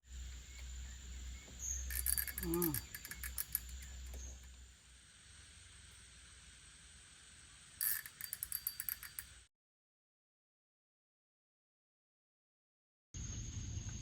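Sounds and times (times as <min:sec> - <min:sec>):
insects chirring: 0:00.0 - 0:09.5, 0:13.2 - 0:14.0
sharp clicks: 0:01.9 - 0:04.6, 0:07.8 - 0:09.3.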